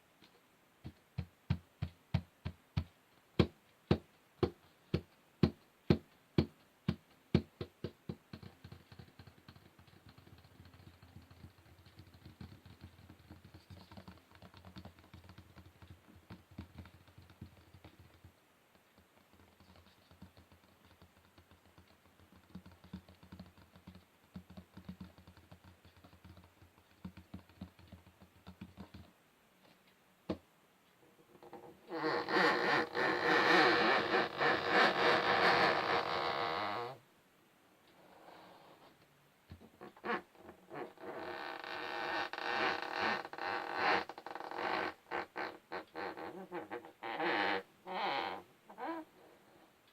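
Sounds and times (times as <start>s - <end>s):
fingernails tapping on wood: 0.8s - 18.3s.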